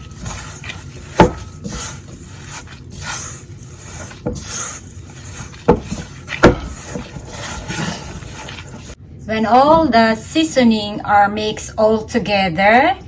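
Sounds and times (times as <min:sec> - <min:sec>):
meat being stirred in a bowl: 0:00.0 - 0:09.0.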